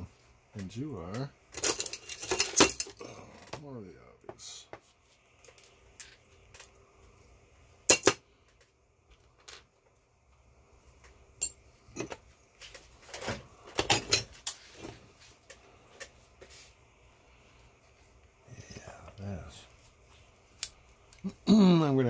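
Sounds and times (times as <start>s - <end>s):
metal tools clinking on a table: 1.6s - 3.0s, 11.4s - 12.2s, 13.2s - 14.7s.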